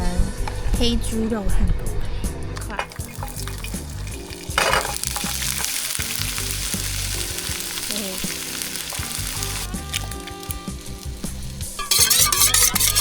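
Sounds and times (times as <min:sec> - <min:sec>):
background music: 0:00.0 - 0:13.0
food sizzling in a pan: 0:02.8 - 0:13.0.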